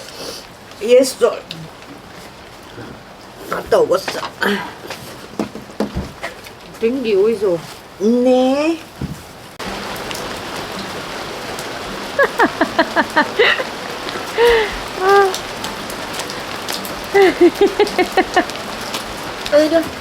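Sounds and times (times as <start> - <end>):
steady rain falling: 0.0 - 20.0
high whining calls: 9.6 - 20.0.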